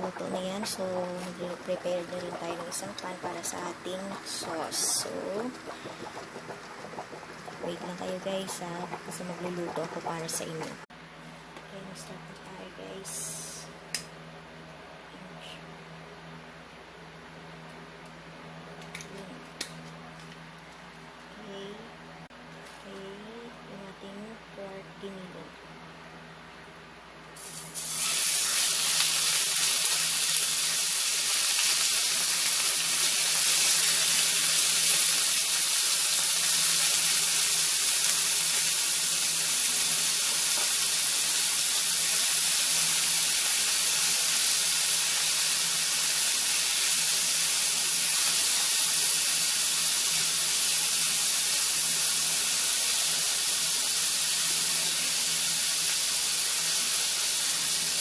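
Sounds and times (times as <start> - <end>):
meat sizzling in a frying pan: 27.4 - 58.0.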